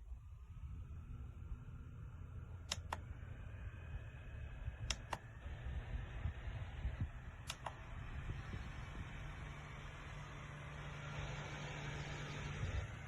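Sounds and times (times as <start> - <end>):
desk fan whirring: 0.0 - 13.0
sharp clicks: 2.6 - 3.2, 4.8 - 5.5, 7.4 - 7.9.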